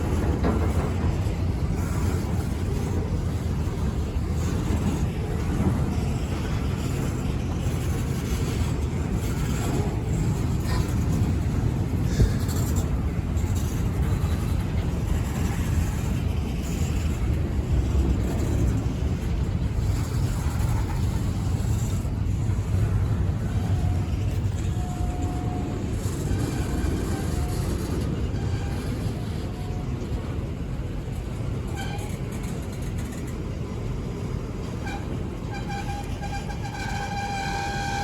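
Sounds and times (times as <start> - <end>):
freight train cars rumbling: 0.0 - 38.0.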